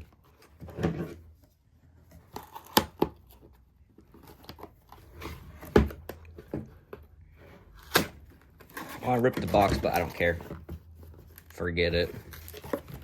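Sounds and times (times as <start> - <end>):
cardboard and tape tearing: 2.2 - 3.3, 7.7 - 10.5, 11.3 - 13.0.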